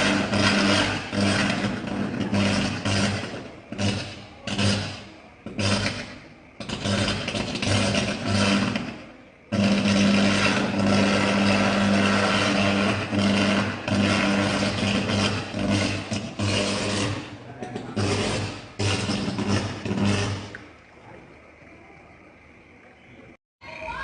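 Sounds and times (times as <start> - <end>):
electrical arcing crackle: 0.0 - 20.8.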